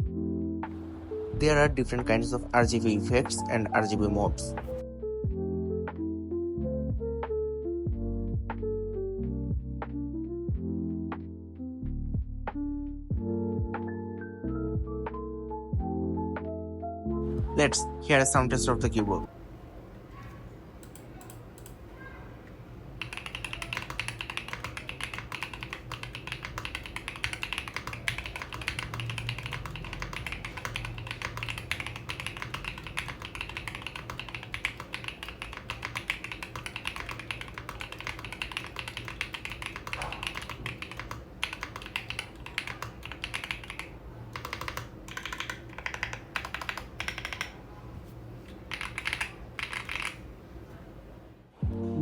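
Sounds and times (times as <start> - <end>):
typing on mechanical keyboard: 20.8 - 21.8, 23.0 - 47.6, 48.5 - 50.3.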